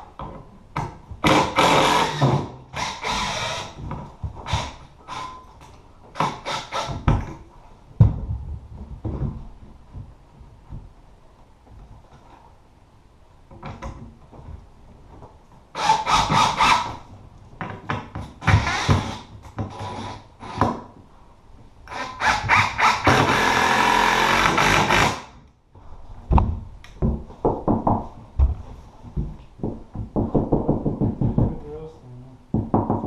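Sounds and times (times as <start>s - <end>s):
power tool working wood: 21.9s - 25.3s
knocks: 26.3s - 31.8s, 32.5s - 33.0s.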